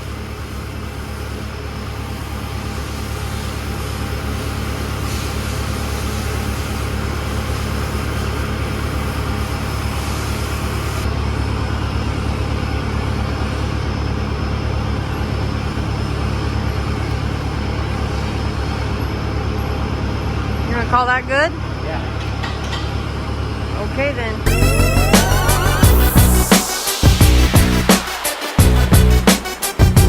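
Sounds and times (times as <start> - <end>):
high hiss: 24.5 - 30.0.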